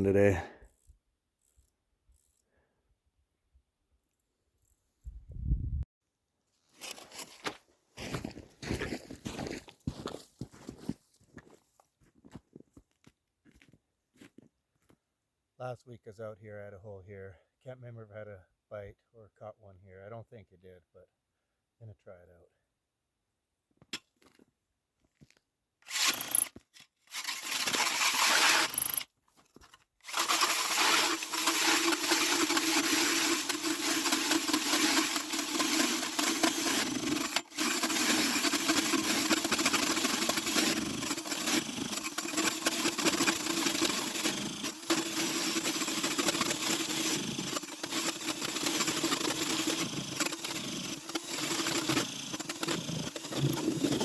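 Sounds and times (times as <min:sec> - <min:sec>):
power ice auger motor: 0:25.9 - 0:26.5, 0:27.1 - 0:29.0, 0:30.0 - 0:54.0.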